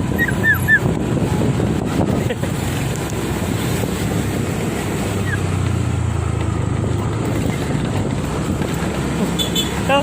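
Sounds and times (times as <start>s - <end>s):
wind over microphone: 0.0s - 5.9s
vehicle engine running: 0.0s - 10.0s.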